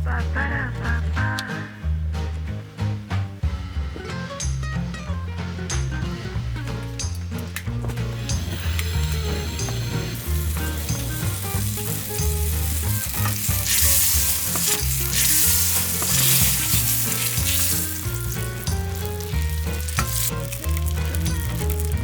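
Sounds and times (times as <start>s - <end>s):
background music: 0.0s - 22.0s
food sizzling in a pan: 8.2s - 22.0s.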